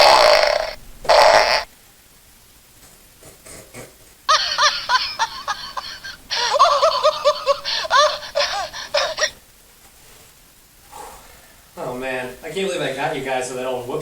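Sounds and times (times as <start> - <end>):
recorded laughter from small speaker: 4.3 - 9.4.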